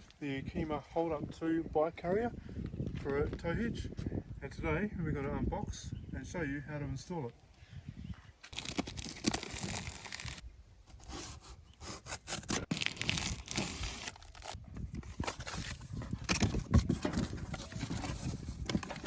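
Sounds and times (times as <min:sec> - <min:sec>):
packaging rustling and crinkling: 0:08.5 - 0:19.0.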